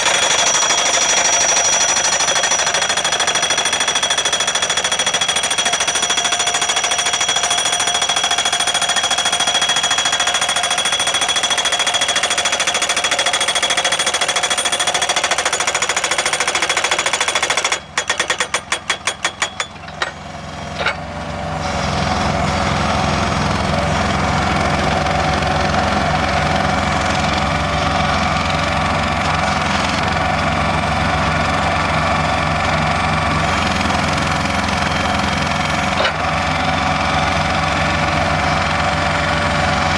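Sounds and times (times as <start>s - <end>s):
pile driver hammer pounding post: 0.0s - 21.0s.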